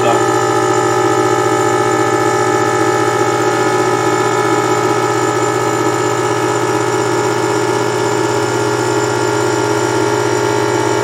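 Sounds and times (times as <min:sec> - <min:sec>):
air compressor humming: 0:00.0 - 0:11.0.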